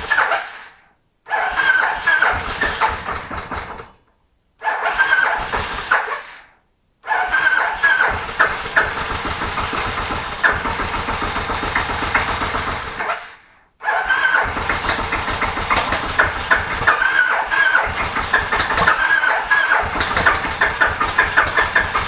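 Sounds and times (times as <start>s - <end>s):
motorcycle engine cranking: 1.5s - 4.0s, 7.3s - 13.1s, 13.9s - 22.0s.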